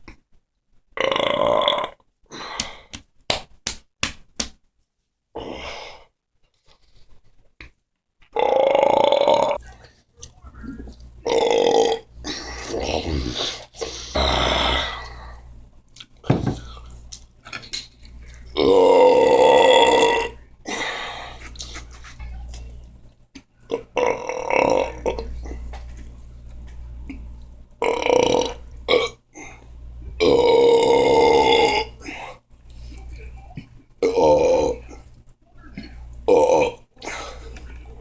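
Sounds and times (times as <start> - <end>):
person belching loudly: 1.0 - 2.0, 8.3 - 9.6, 11.2 - 13.4, 14.1 - 15.0, 18.6 - 20.4, 23.7 - 25.3, 27.8 - 29.2, 30.2 - 32.0, 34.0 - 35.0, 35.8 - 36.9.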